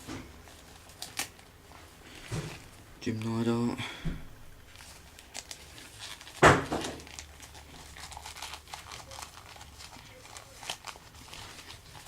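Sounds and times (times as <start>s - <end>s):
plastic packaging crinkling: 0.0s - 2.8s, 4.6s - 12.0s.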